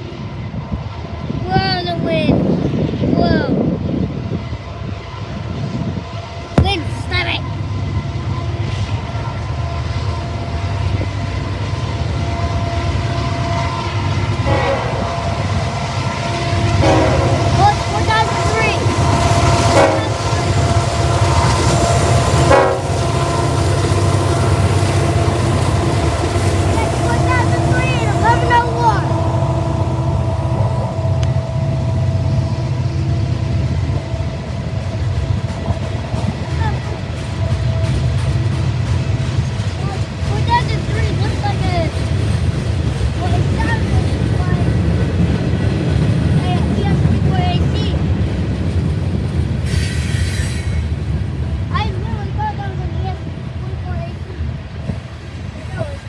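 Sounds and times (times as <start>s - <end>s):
locomotive engine rumble: 0.0s - 56.0s
wind buffeting microphone: 0.0s - 56.0s
locomotive air horn: 12.5s - 15.6s, 16.5s - 21.4s, 22.2s - 23.7s.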